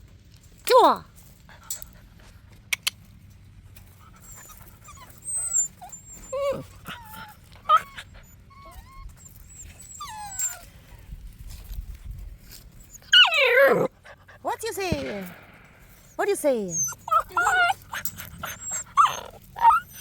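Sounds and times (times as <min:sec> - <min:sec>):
sharp clicks: 0:02.7 - 0:03.0
puppies whimpering and yelping: 0:04.0 - 0:11.1, 0:12.7 - 0:15.0, 0:16.0 - 0:20.0.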